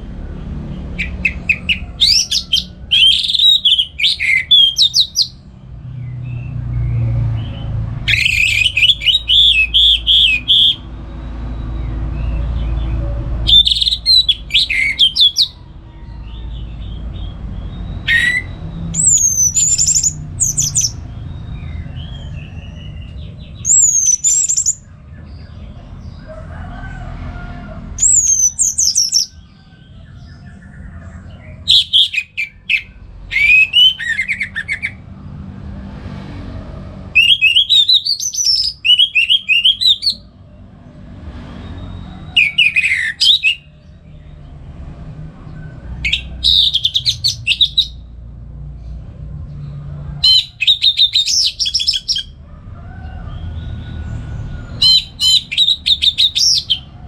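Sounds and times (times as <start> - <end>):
thrush whistles and trills: 1.0 - 5.4, 7.4 - 12.4, 13.4 - 15.8, 17.2 - 23.0, 31.7 - 35.0, 37.1 - 40.3, 41.4 - 43.8, 46.0 - 48.1, 50.2 - 52.4, 53.3 - 57.0.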